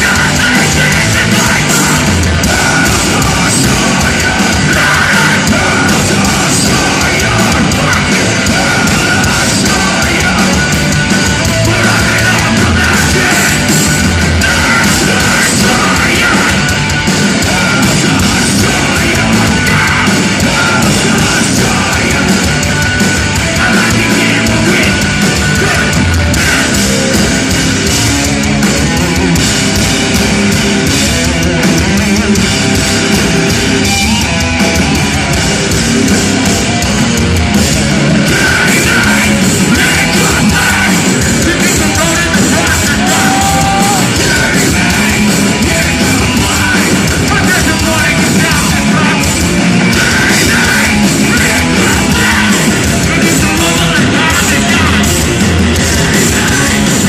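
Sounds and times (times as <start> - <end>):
shouted vocals: 0.0 - 10.6, 38.3 - 49.3
bass guitar: 0.0 - 57.0
distorted electric guitars: 0.0 - 57.0
pounding drums: 0.0 - 57.0.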